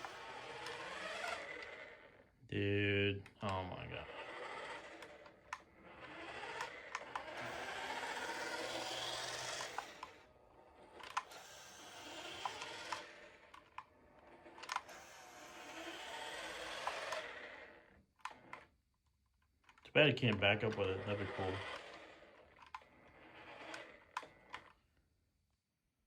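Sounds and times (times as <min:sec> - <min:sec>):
toy car motor whirring: 0:00.0 - 0:02.4, 0:03.4 - 0:18.8, 0:19.6 - 0:24.9.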